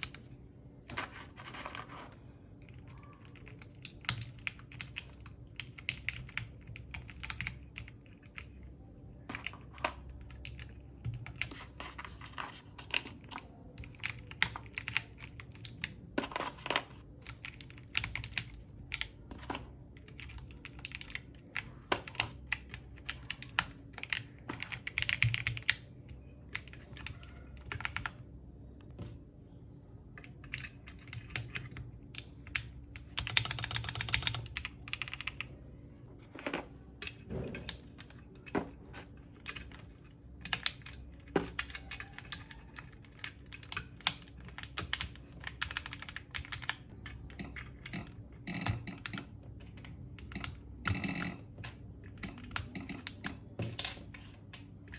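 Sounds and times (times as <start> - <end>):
mechanical keyboard typing: 0.0 - 28.9, 30.2 - 35.6, 36.4 - 54.9.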